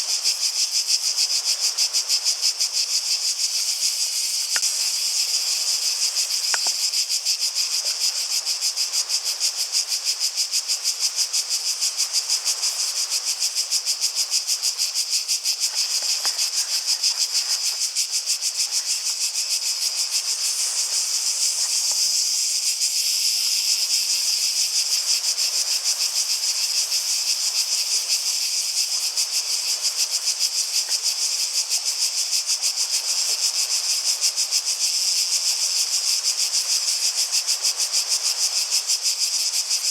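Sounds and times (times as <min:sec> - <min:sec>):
cicadas buzzing: 0:00.0 - 0:39.9.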